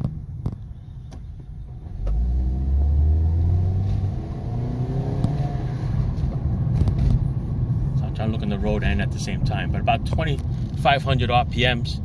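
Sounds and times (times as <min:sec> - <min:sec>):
car engine accelerating hard: 0:01.8 - 0:06.4.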